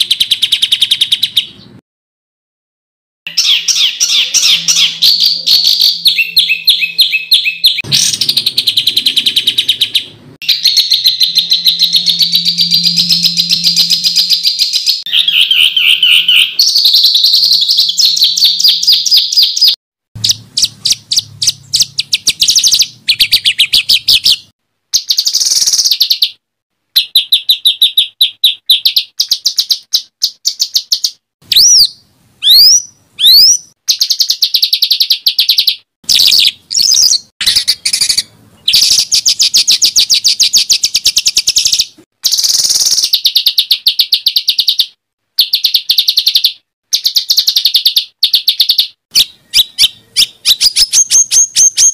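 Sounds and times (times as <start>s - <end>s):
songbird trills: 3.3s - 26.4s, 27.0s - 51.9s
sharp swooping whistles: 5.8s - 16.6s.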